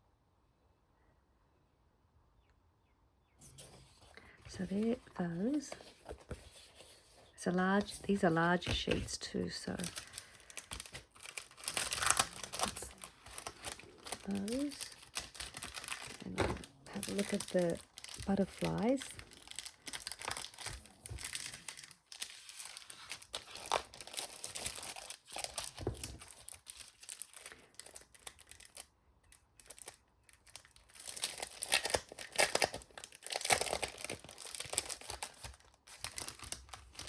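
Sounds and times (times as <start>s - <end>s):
crinkly packaging rustling: 3.4s - 37.0s
packaging tearing: 9.7s - 37.0s.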